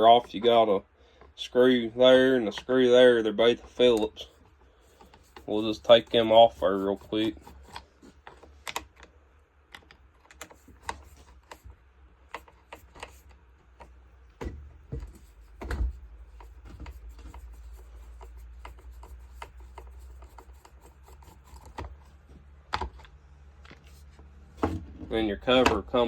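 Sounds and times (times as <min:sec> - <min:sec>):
steady low hum: 0:00.0 - 0:26.0
tools clicking on plastic: 0:07.0 - 0:11.7.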